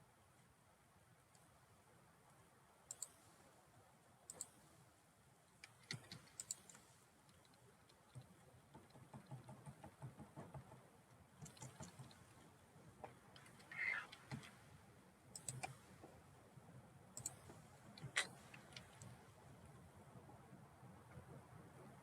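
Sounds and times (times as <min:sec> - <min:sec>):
faint mouse and keyboard clicks: 0:01.3 - 0:01.5, 0:02.8 - 0:03.4, 0:04.3 - 0:04.7, 0:05.4 - 0:14.7, 0:15.3 - 0:16.2, 0:17.1 - 0:19.2.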